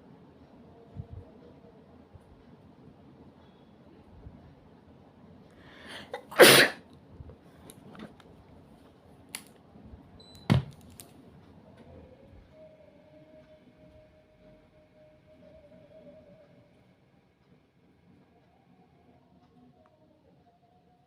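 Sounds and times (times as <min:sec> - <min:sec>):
breathy in-breath: 0:05.6 - 0:06.2
person sneezing: 0:05.9 - 0:06.8.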